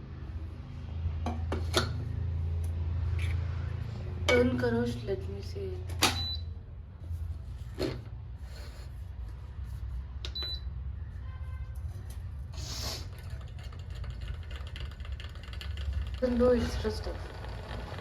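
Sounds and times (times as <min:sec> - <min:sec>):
milk frother humming: 0:13.0 - 0:18.0.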